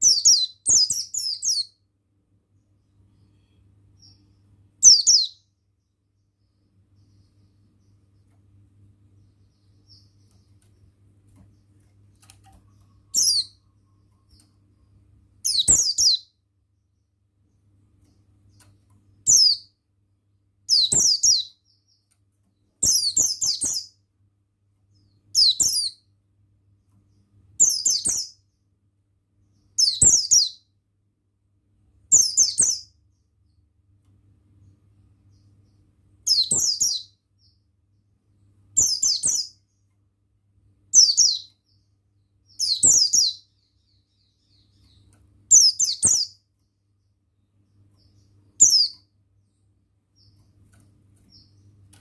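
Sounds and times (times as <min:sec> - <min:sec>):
faint low hum: 0:00.0 - 0:52.0
bird twittering: 0:04.8 - 0:05.4, 0:12.7 - 0:13.6, 0:15.4 - 0:16.3, 0:20.7 - 0:21.8, 0:42.5 - 0:46.4, 0:48.6 - 0:49.0.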